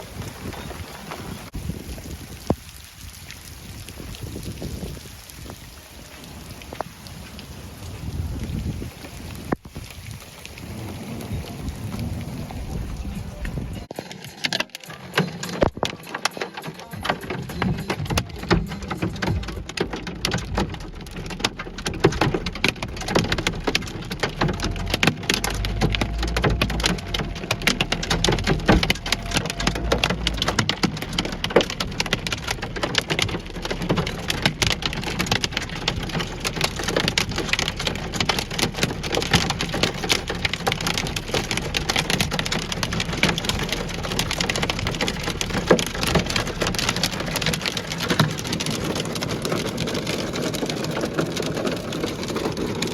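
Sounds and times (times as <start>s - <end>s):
hailstones clattering: 8.1s - 52.9s
low rumble: 10.4s - 13.9s, 18.2s - 52.9s.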